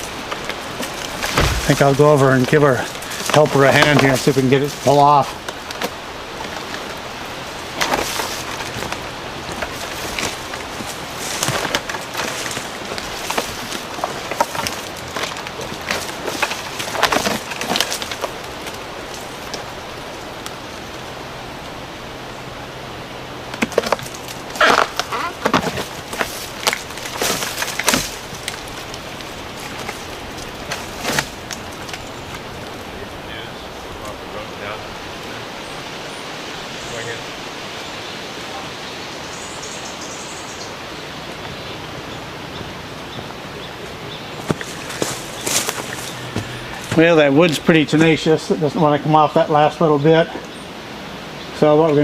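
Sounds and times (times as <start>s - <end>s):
outdoor rushing noise: 0.0s - 5.4s
twigs and branches snapping: 0.0s - 7.0s, 7.7s - 21.0s, 23.5s - 32.9s, 44.4s - 47.6s
steady hiss: 0.0s - 52.0s.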